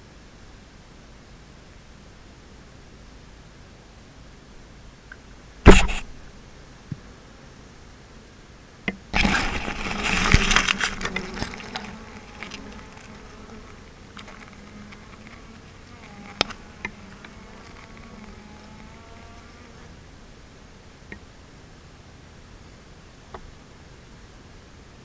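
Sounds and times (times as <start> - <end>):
tree limbs rustling and crackling: 9.1 - 20.1
bees buzzing: 9.1 - 20.3.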